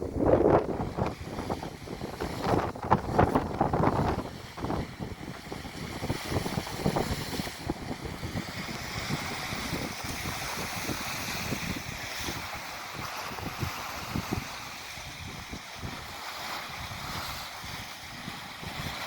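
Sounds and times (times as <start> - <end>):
gusty wind buffeting microphone: 0.0 - 19.0
waves rushing: 0.0 - 19.0.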